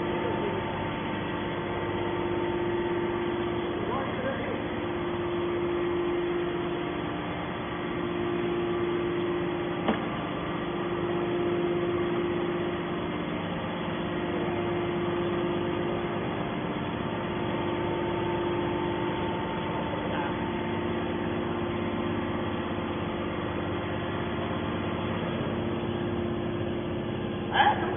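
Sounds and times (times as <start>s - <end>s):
scrap metal baler droning: 6.3s - 27.9s.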